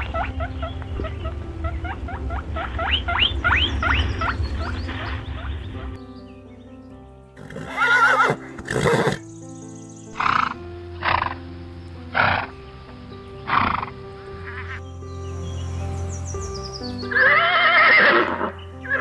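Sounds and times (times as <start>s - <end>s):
music with steady held tones: 0.0s - 19.0s
horse whinnying: 7.4s - 9.2s, 17.1s - 19.0s.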